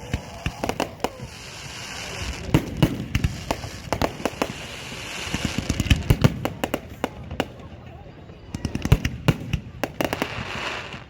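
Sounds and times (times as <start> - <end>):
crackling hiss of fireworks: 0.0 - 11.0
fireworks banging: 0.0 - 11.0.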